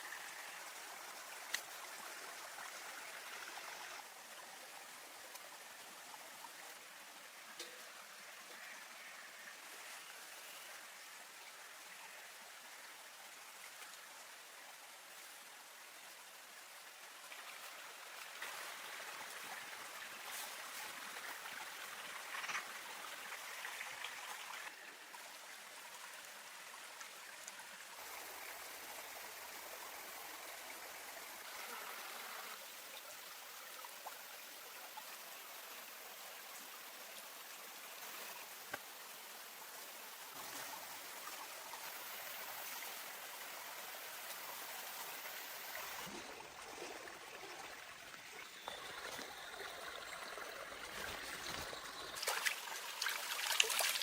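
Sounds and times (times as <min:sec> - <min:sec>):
stream water running: 0:00.0 - 0:54.0.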